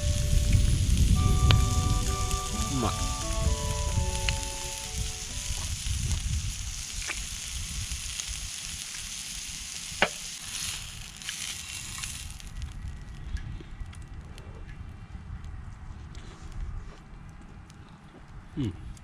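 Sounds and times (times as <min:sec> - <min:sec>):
short run of musical notes: 0:00.0 - 0:06.1
campfire crackling and popping: 0:00.0 - 0:15.9.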